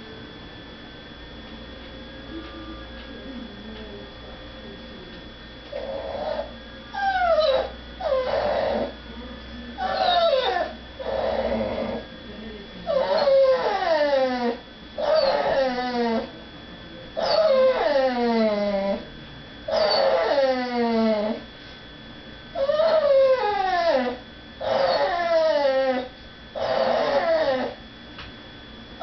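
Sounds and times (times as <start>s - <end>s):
dog whining and crying: 5.7s - 9.0s, 9.8s - 12.0s, 12.9s - 16.3s, 17.2s - 19.0s, 19.7s - 21.4s, 22.6s - 27.8s.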